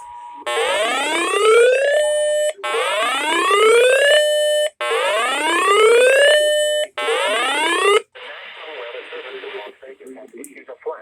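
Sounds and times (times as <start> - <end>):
electronic whoop alarm tone: 0.0 - 8.1.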